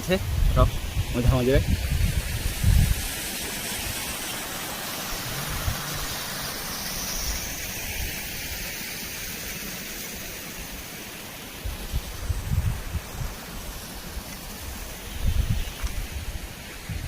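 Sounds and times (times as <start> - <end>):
waterfall rushing over rocks: 0.0 - 17.0.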